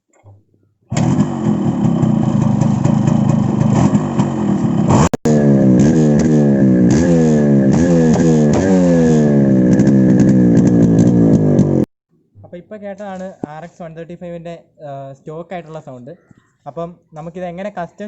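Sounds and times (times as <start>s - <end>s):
motorcycle engine revving: 0.9s - 11.9s.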